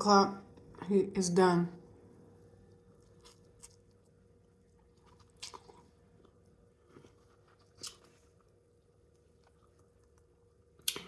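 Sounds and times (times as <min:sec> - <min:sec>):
faint steady hum: 0:00.0 - 0:11.0
soft chewing and mouth clicks: 0:02.2 - 0:11.0
sharp mouth smacks: 0:10.8 - 0:11.0.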